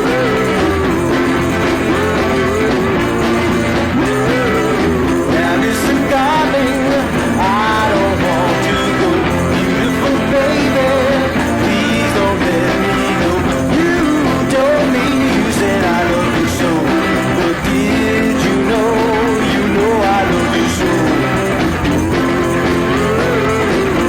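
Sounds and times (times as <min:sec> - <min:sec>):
rock music with guitar: 0:00.0 - 0:24.0.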